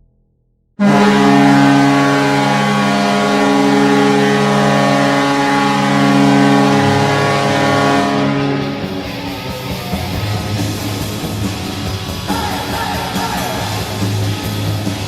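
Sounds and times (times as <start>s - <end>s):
arena goal horn blast: 0.8s - 9.2s.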